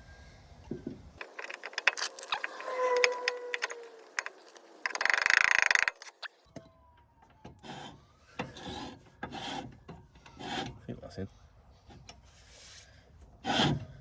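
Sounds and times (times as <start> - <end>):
metal clicking and scraping: 1.2 - 6.4.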